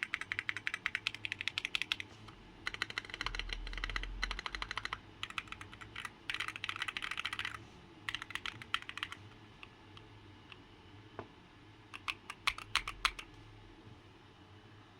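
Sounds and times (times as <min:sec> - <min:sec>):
mechanical keyboard typing: 0:00.0 - 0:09.2, 0:12.0 - 0:13.3.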